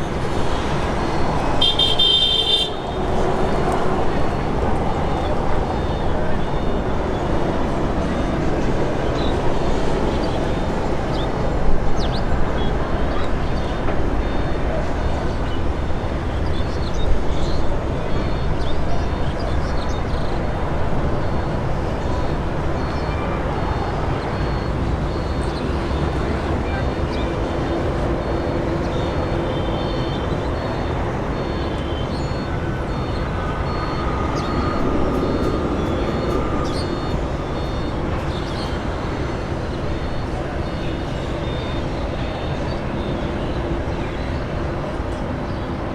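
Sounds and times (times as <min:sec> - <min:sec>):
faint high-pitched beeping: 0:00.0 - 0:45.9
steady outdoor rumble: 0:00.0 - 0:45.9
vehicle engine noise: 0:00.0 - 0:45.9.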